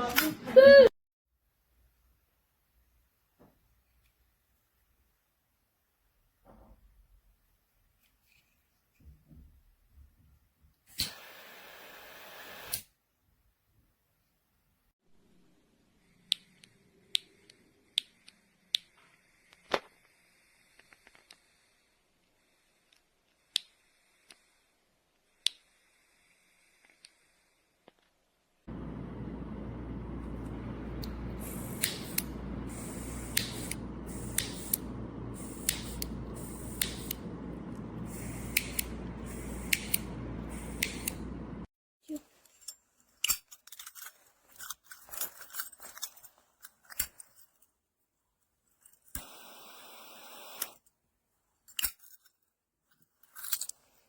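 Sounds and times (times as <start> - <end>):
faint low hum: 28.7 - 41.7
sharp clicks: 31.0 - 41.7.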